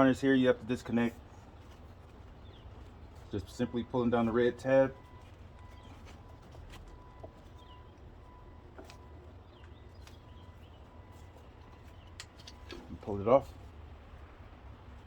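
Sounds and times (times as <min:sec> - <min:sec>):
low background hum: 0:00.0 - 0:15.0
faint bird chirps: 0:05.0 - 0:12.8.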